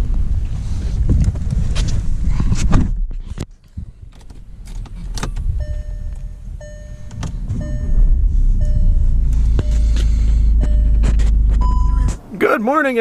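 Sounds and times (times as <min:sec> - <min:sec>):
low engine rumble: 0:00.0 - 0:13.0
car warning chime: 0:05.6 - 0:12.8.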